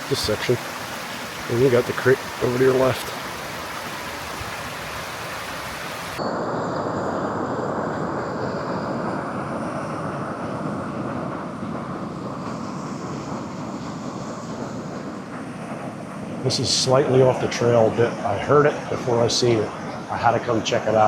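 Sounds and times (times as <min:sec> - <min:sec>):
small waterfall pouring: 0:00.0 - 0:06.2
creek hissing: 0:00.0 - 0:21.0.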